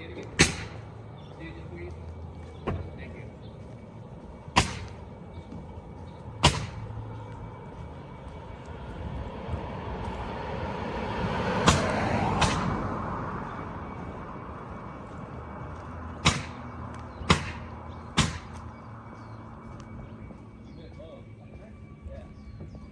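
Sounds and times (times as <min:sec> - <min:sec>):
vehicle passing: 0:00.0 - 0:22.9
sharp knocks: 0:00.4 - 0:00.9, 0:04.6 - 0:05.0, 0:06.4 - 0:06.9, 0:11.6 - 0:12.8, 0:16.2 - 0:18.7.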